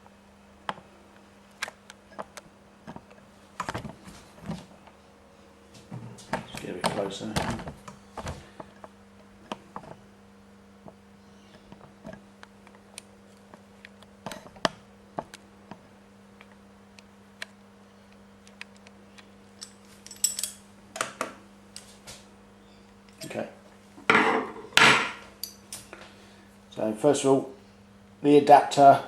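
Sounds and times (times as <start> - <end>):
faint steady hum: 0.0 - 29.0
clicks of spanner pieces handled: 19.5 - 20.6.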